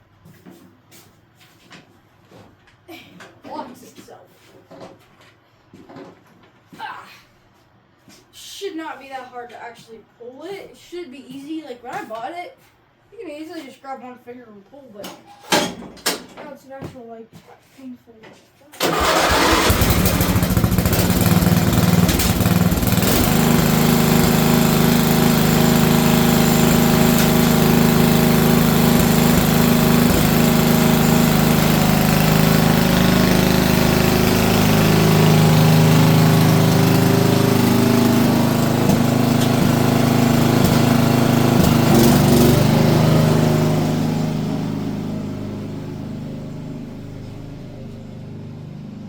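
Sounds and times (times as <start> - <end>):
lawn tractor engine running: 18.8 - 49.0.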